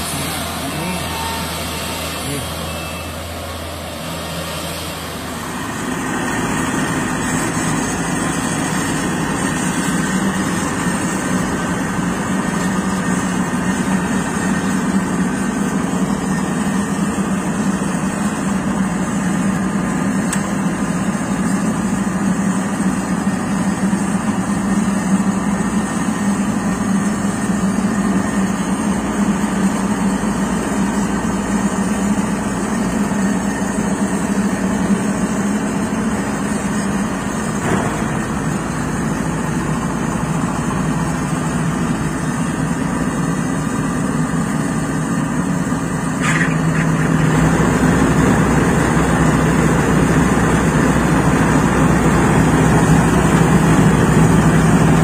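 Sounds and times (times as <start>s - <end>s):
combine harvester engine running: 0.0s - 55.0s.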